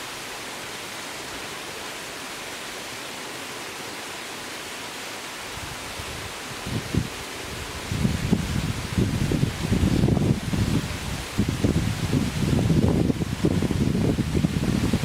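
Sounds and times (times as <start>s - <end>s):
waterfall rushing: 0.0s - 15.0s
wind gusts on microphone: 5.5s - 15.0s.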